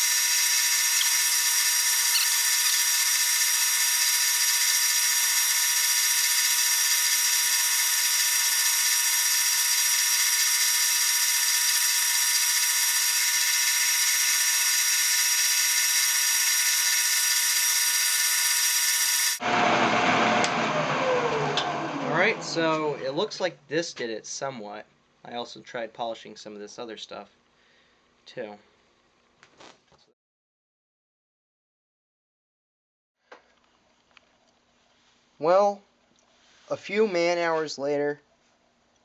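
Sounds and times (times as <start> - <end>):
buffing wheel whining: 0.0 - 19.4.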